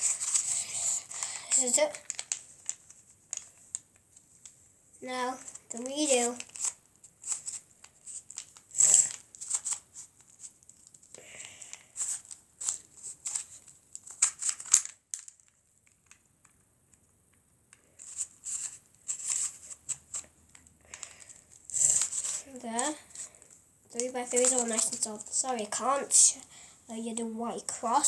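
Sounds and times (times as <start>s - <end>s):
puzzle cube clicking and rasping: 0.0s - 2.4s, 20.9s - 23.3s, 24.0s - 26.2s.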